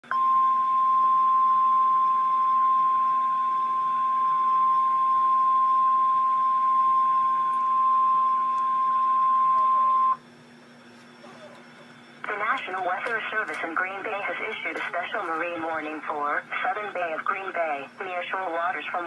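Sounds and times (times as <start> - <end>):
faint hum: 0.0 - 19.0
steady high alarm beep: 0.1 - 10.3.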